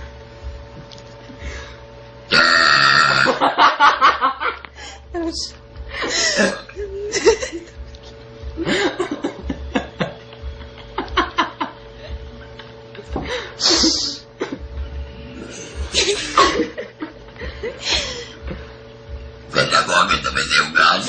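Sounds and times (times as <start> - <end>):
people giggling and snickering: 3.3 - 4.7, 6.0 - 7.9, 8.5 - 14.8, 15.5 - 18.6.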